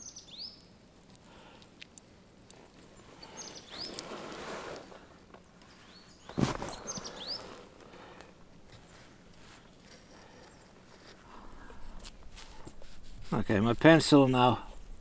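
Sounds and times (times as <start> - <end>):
small bird chirping: 2.4 - 4.0, 5.6 - 7.5
scraping rustling sound: 3.0 - 14.8.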